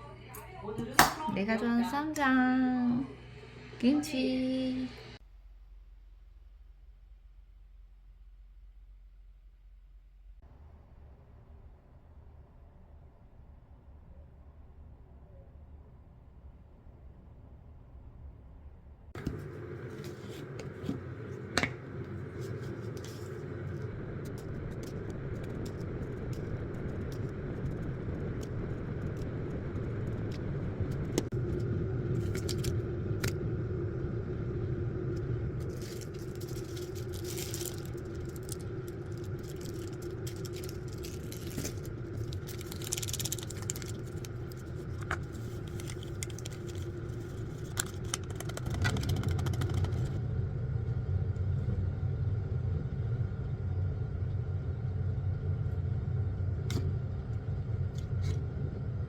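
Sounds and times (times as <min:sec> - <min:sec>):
small clicks and rattles: 0:47.6 - 0:50.2.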